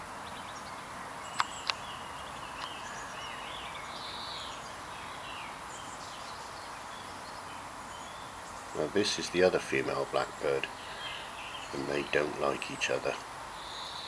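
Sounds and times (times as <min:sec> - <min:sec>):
birds singing and chirping: 0:00.0 - 0:14.0
steady outdoor hiss: 0:00.0 - 0:14.0
sharp clicks: 0:01.3 - 0:01.8.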